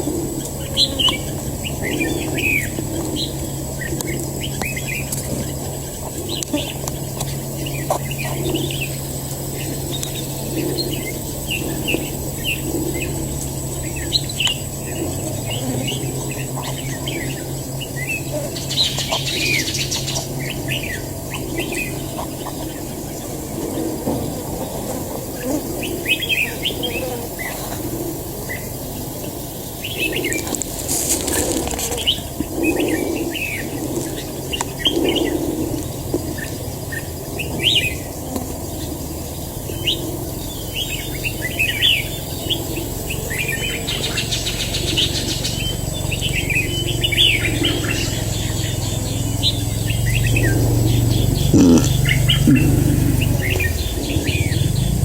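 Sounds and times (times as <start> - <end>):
birds chirping: 0.0 - 55.0
rustling: 30.3 - 32.3.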